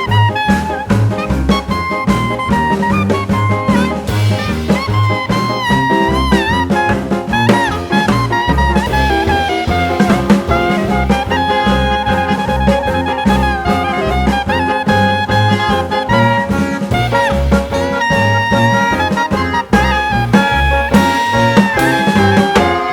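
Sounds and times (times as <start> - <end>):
upbeat swing jazz: 0.0 - 22.9.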